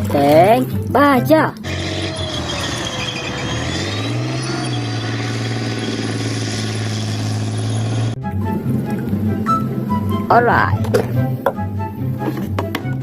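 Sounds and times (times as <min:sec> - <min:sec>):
tank engine running: 0:01.6 - 0:10.0.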